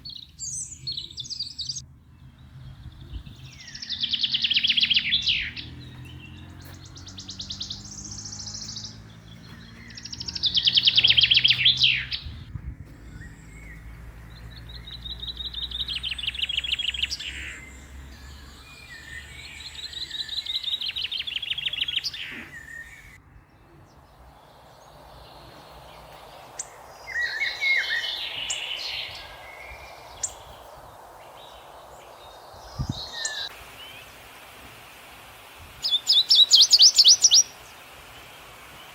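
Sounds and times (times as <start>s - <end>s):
bird chirps and calls: 0.0s - 34.1s, 35.8s - 38.9s
songbird rattling trill: 2.8s - 23.2s, 24.1s - 34.1s.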